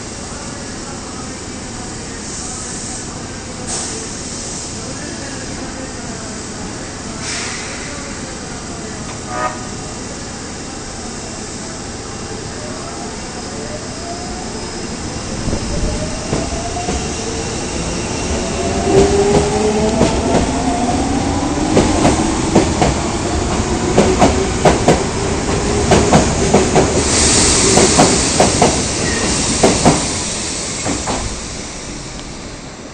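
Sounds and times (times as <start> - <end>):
burst of hiss: 7.2 - 8.2, 27.0 - 32.1.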